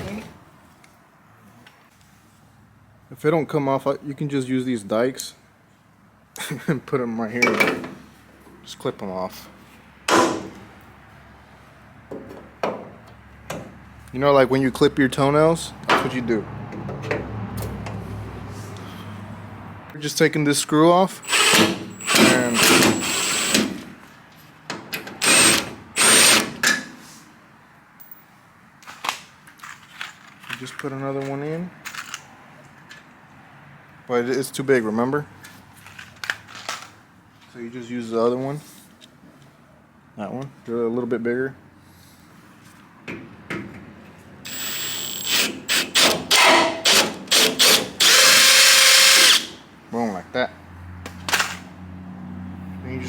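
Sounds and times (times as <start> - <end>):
power drill whining: 21.2 - 23.7, 25.2 - 26.6, 44.5 - 49.5.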